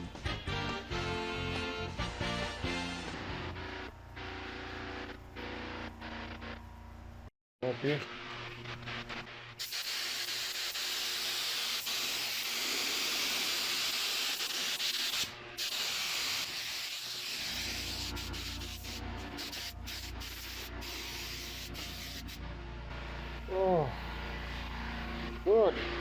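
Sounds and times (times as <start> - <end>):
steady low hum: 3.2 - 7.3, 17.4 - 26.0
spray gun hissing: 9.6 - 22.4.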